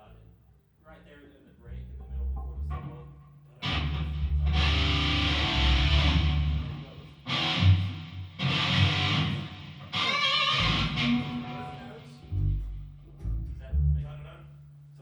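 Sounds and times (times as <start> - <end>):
electric guitar chords: 3.6 - 13.4.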